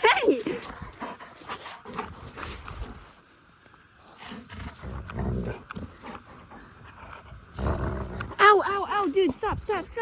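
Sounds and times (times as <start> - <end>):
dog growling: 4.2 - 8.4.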